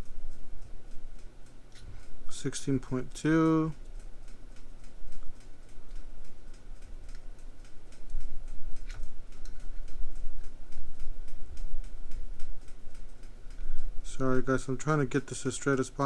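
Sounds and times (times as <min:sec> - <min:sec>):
quick even ticking: 0:00.0 - 0:16.0.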